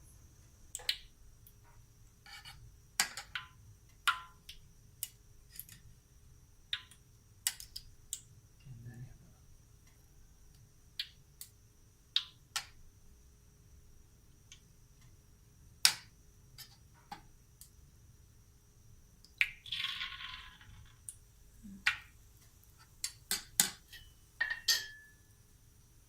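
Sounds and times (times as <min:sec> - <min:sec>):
utensils clinking against dishes: 0:23.6 - 0:25.2.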